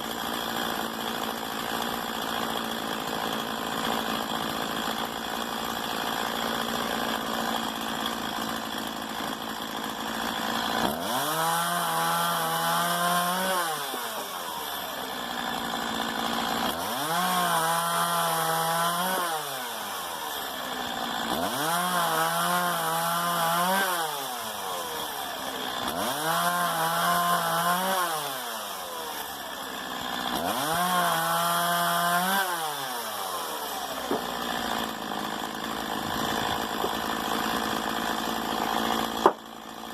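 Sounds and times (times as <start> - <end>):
chainsaw idling and revving: 0.0 - 39.9.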